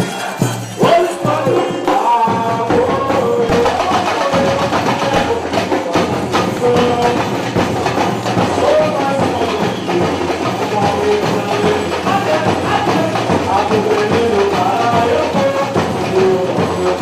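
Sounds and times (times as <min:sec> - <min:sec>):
fast samba percussion groove: 0:00.0 - 0:17.0.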